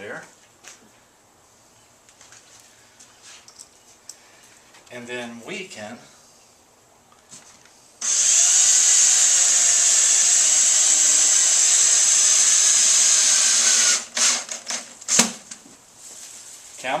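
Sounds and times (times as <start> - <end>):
power drill driving screw: 8.0 - 15.3.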